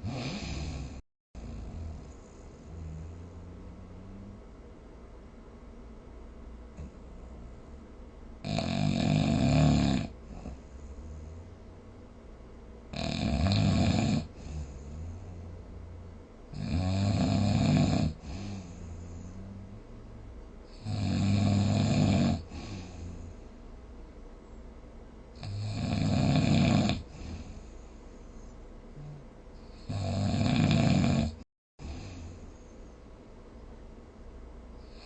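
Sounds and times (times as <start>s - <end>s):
person snoring: 0.0s - 4.4s, 8.4s - 11.6s, 12.9s - 15.8s, 16.5s - 19.9s, 20.7s - 23.4s, 25.4s - 27.8s, 28.9s - 32.7s
quiet breathing: 0.0s - 4.8s, 10.0s - 12.9s, 14.2s - 16.7s, 17.3s - 21.7s, 22.3s - 25.6s, 27.0s - 30.0s, 31.2s - 33.7s.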